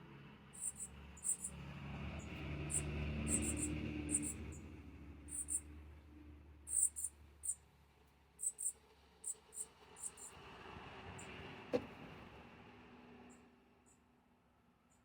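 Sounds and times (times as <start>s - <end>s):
small animal high chirps: 0.6s - 1.5s, 2.7s - 4.4s, 5.3s - 5.6s, 6.7s - 7.6s, 8.4s - 8.7s.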